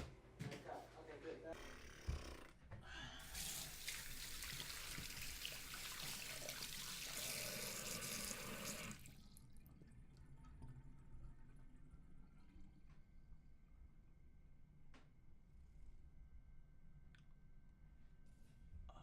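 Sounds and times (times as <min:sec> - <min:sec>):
water running: 0:03.2 - 0:12.7.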